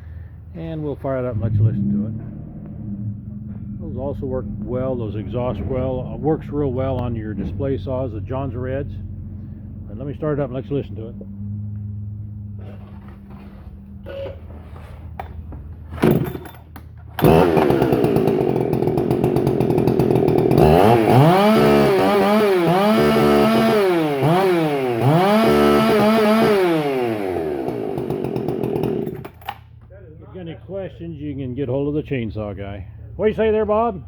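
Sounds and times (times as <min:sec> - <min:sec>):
chainsaw starting and revving: 0:16.0 - 0:29.6.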